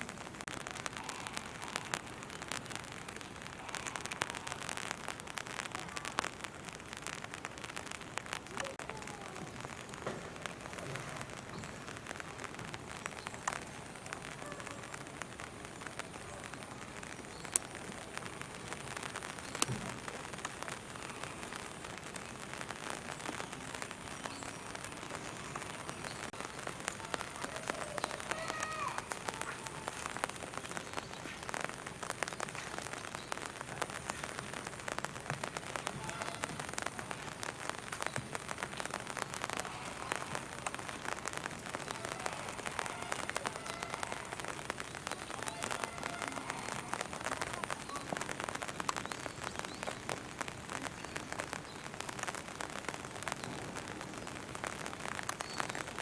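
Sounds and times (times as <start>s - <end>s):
rain pattering: 0.0s - 56.0s.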